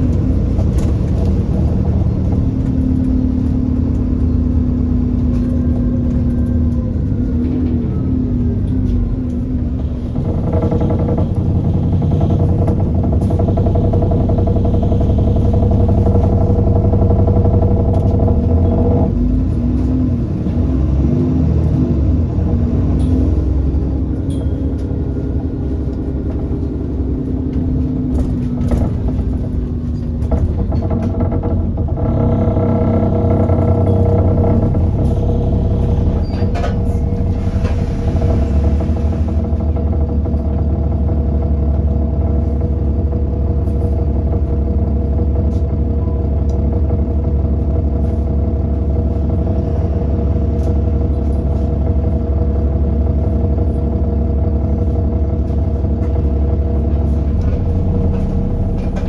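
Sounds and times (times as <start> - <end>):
bus diesel engine running: 0.0 - 59.0
sharp knocks and rattles: 9.7 - 19.7, 23.0 - 46.0, 46.6 - 59.0.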